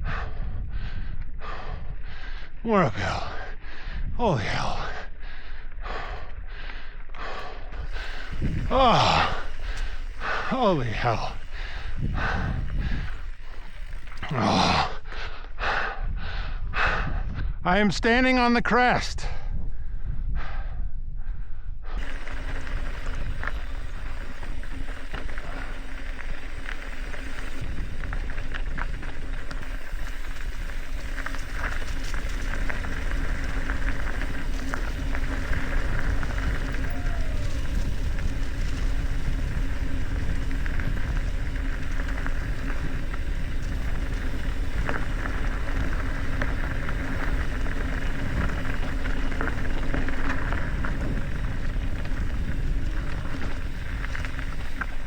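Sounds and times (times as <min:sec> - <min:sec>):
wind rushing over microphone: 0:00.0 - 0:05.2, 0:07.6 - 0:18.0, 0:19.2 - 0:55.0
bike rattling and clicking: 0:05.9 - 0:15.9, 0:22.0 - 0:55.0
steady hum: 0:22.0 - 0:55.0
tyres rolling: 0:22.0 - 0:55.0.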